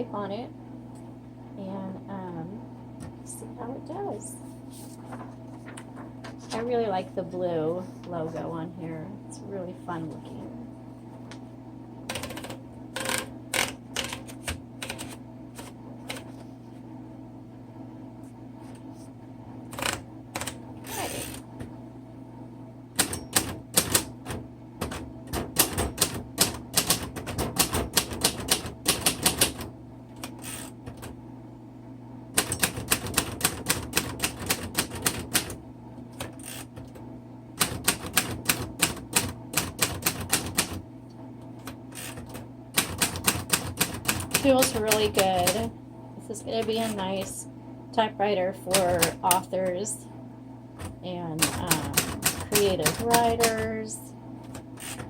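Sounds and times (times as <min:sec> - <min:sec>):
steady low hum: 0:00.0 - 0:55.0
manual typewriter keystrokes: 0:12.1 - 0:16.3, 0:23.0 - 0:31.1, 0:32.4 - 0:35.6, 0:37.6 - 0:40.8, 0:41.6 - 0:45.7, 0:48.7 - 0:49.4, 0:50.8 - 0:53.7.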